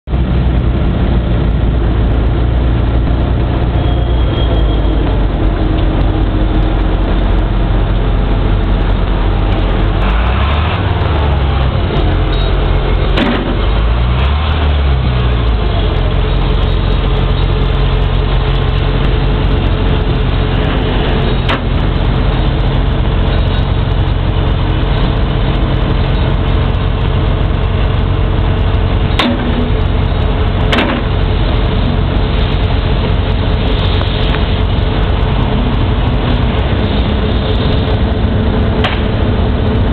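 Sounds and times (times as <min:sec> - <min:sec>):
excavator diesel engine running: 0:00.0 - 0:39.9
sharp metallic knocks: 0:12.2 - 0:14.0, 0:29.1 - 0:29.9, 0:30.7 - 0:31.2, 0:38.8 - 0:39.3.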